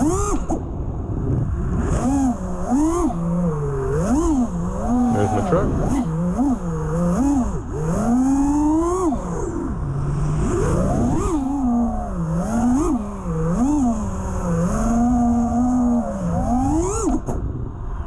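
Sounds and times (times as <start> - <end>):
drone motors whining: 0.0 - 18.0
wind rushing: 5.0 - 6.0.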